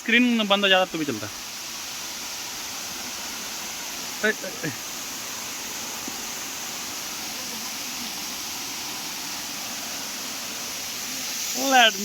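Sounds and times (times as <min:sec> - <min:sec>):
waterfall rushing: 0:00.0 - 0:12.0.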